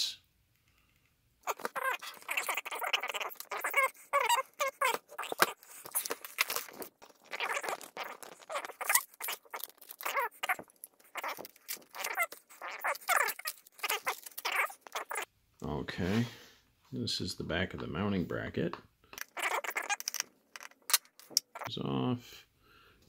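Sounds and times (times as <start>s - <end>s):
plastic housing squeaking and creaking: 1.4s - 15.3s, 19.2s - 21.7s.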